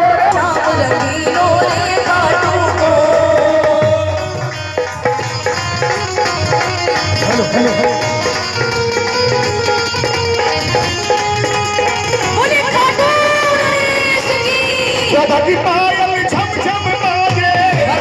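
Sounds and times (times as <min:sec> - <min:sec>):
tabla drumming: 0:00.0 - 0:18.0
melody instrument: 0:05.0 - 0:13.1.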